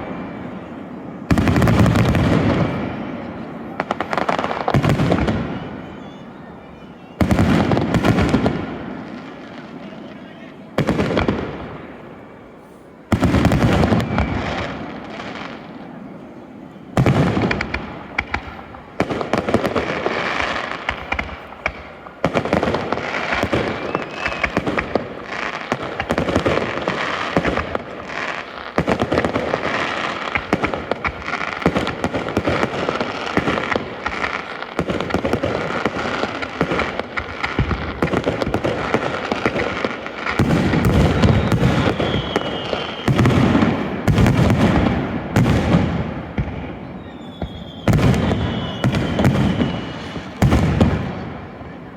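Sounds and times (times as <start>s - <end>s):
firework bursts and crackling: 0.0s - 51.9s
heavy firework boom: 40.4s - 51.6s.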